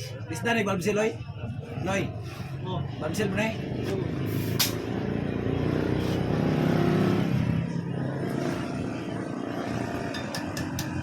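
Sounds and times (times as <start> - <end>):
motorcycle engine running: 7.3 - 11.0.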